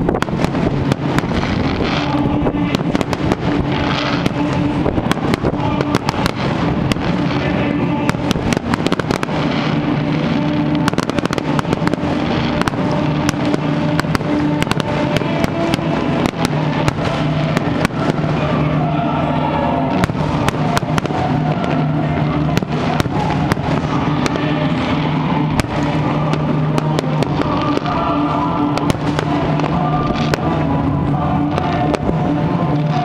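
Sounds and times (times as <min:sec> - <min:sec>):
fireworks bursting and crackling: 0:00.0 - 0:33.0
steady low drone: 0:00.0 - 0:33.0.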